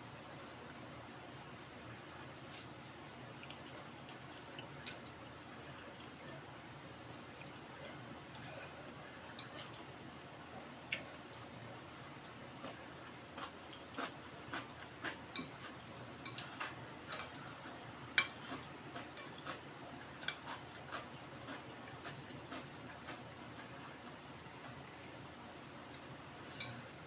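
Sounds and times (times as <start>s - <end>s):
light eating clicks and taps: 3.3s - 6.4s, 9.2s - 9.9s, 10.9s - 25.2s, 25.8s - 26.9s.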